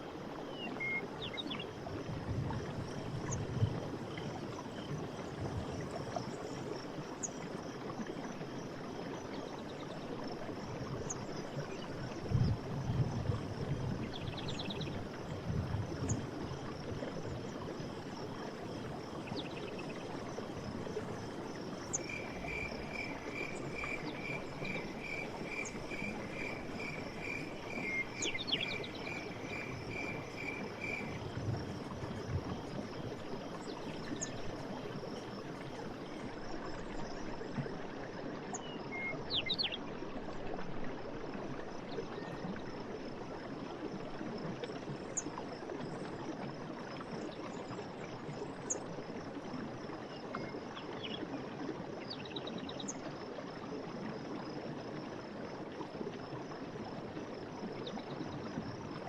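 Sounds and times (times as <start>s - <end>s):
running water: 0.0s - 59.0s
insects trilling: 10.0s - 37.3s.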